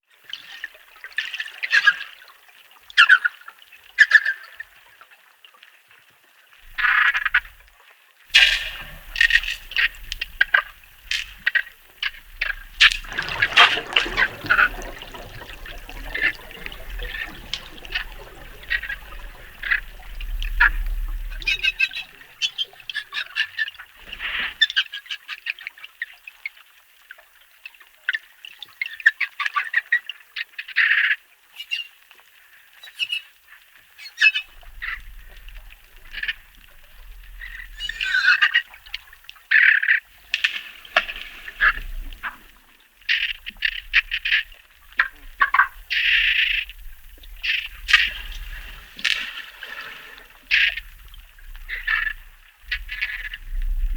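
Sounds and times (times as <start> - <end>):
dolphin clicks: 8.3 - 23.1
dolphin whistles and squawks: 11.4 - 23.3, 37.7 - 38.5.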